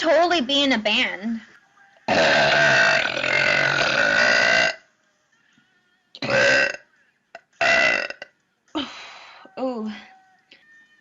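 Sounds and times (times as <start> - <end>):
woman burping: 2.1 - 4.8, 6.2 - 6.8, 7.4 - 8.3.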